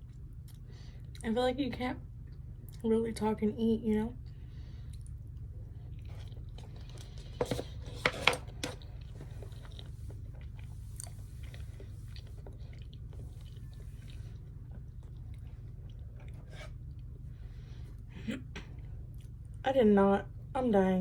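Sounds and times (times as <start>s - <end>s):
steady low hum: 0.0s - 21.0s
person chewing food: 4.7s - 18.1s, 18.7s - 19.6s.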